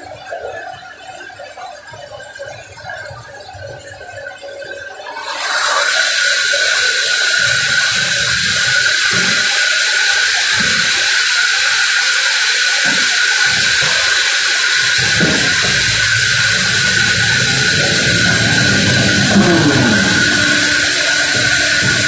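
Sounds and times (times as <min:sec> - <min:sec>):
sawmill machine whining hiss: 0:05.1 - 0:22.0.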